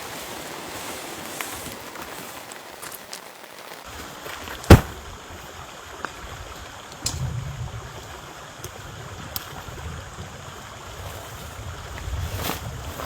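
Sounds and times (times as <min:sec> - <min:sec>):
rain patter: 0:00.0 - 0:13.0
sharp loud knock: 0:04.7 - 0:05.0.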